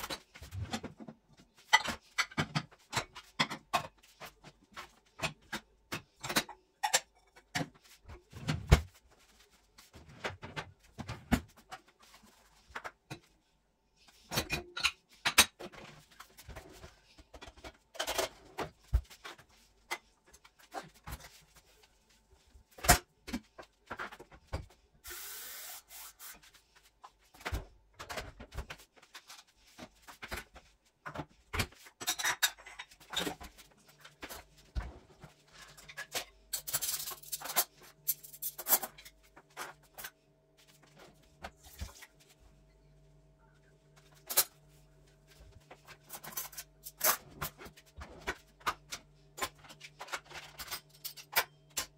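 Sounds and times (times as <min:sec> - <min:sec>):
items knocking and clattering: 0:00.0 - 0:09.0, 0:14.2 - 0:21.4
steady hiss: 0:25.0 - 0:26.4.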